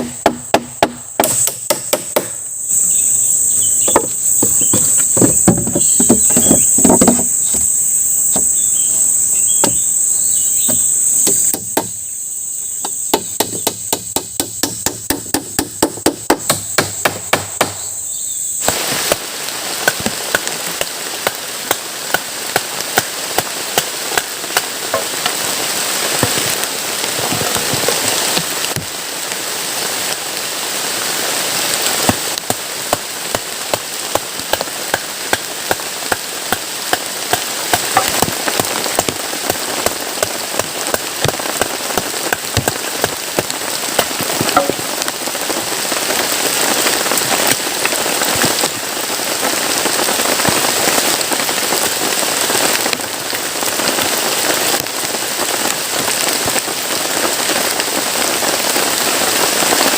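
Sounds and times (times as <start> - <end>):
tool knocking on wood: 0.0 - 2.4, 3.8 - 7.7, 12.8 - 17.8, 44.4 - 44.8
heavy rain falling: 0.0 - 11.7, 18.4 - 59.9
rain drop hits: 0.0 - 12.0, 18.5 - 59.9
high-pitched insect drone: 0.0 - 19.2.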